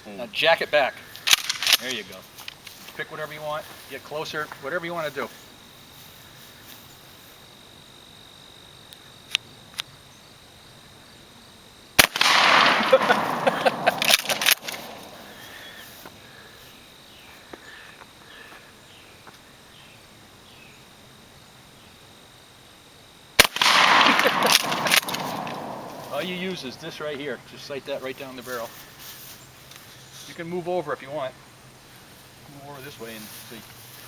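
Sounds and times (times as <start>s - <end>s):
shotgun shots: 12.0s - 15.6s, 23.4s - 26.9s.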